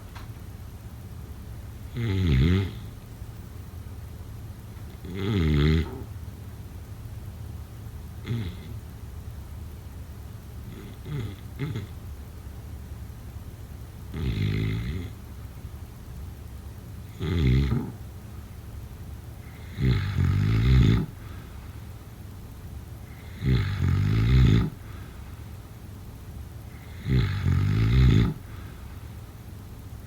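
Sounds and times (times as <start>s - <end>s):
person snoring: 8.2s - 8.7s, 19.4s - 21.4s, 23.1s - 25.0s, 26.7s - 28.8s.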